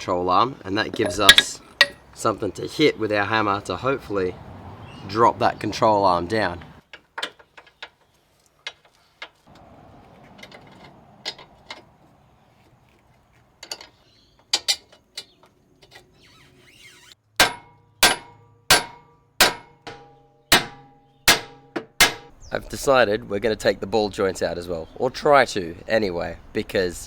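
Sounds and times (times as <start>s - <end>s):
hammer ringing on metal: 17.4s - 22.3s.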